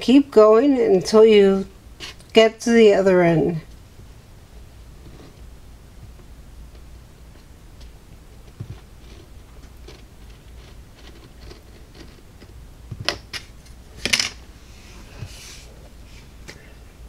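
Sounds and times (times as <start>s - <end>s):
soft scrape: 4.9s - 5.5s, 14.5s - 16.4s.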